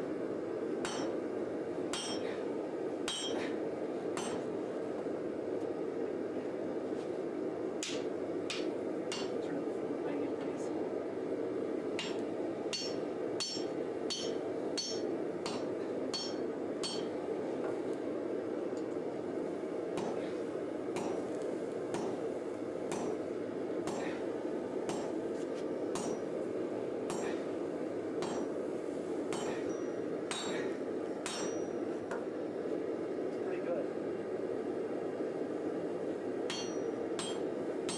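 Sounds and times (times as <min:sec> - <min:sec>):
hammer ringing on anvil: 0:00.9 - 0:01.2, 0:01.9 - 0:02.3, 0:03.1 - 0:03.4, 0:12.0 - 0:17.1, 0:26.0 - 0:26.3, 0:27.1 - 0:27.4, 0:29.3 - 0:30.7, 0:31.3 - 0:31.8, 0:36.5 - 0:37.9.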